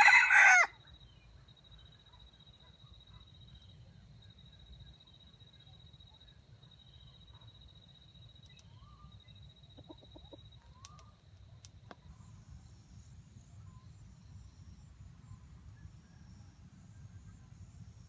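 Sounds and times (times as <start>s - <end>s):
jungle fowl clucking: 9.8s - 10.5s.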